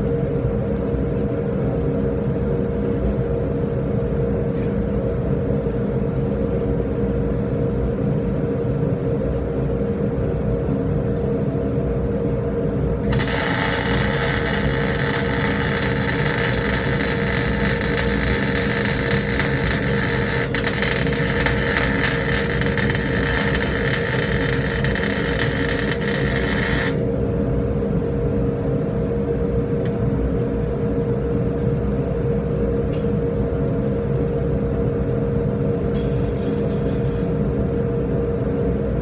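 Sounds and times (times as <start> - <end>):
loud machine hum: 13.0 - 27.5.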